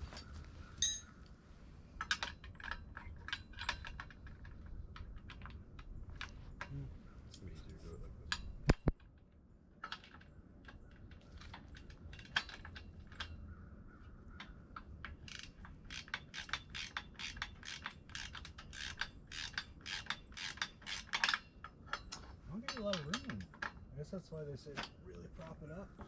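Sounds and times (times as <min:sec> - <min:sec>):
wrench clicking on bolt: 0:14.4 - 0:23.8.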